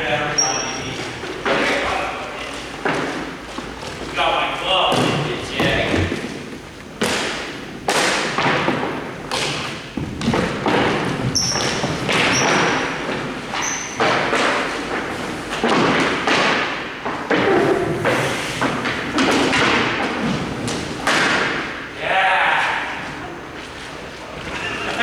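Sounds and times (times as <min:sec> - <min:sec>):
puck and sticks striking boards: 0:00.0 - 0:23.7
brief high squeaks: 0:13.6 - 0:14.0.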